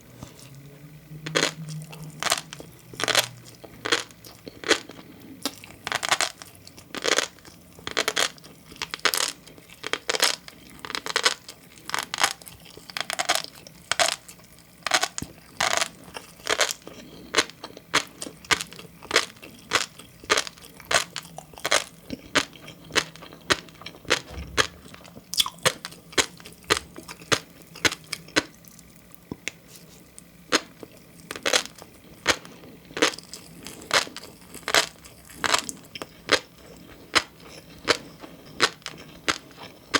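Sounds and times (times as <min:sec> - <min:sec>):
chewing with pops and crunches: 0:01.2 - 0:39.9.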